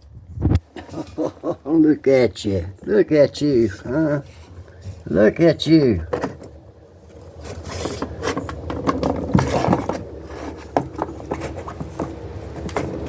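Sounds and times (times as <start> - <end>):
kittens scuffling: 6.0 - 13.0
paws tapping and scraping: 7.1 - 13.0.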